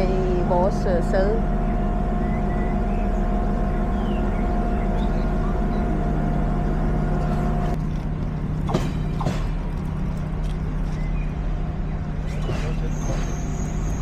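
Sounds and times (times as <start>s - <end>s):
train carriage hum: 0.0s - 14.0s
short knocks: 8.6s - 10.8s, 12.2s - 14.0s.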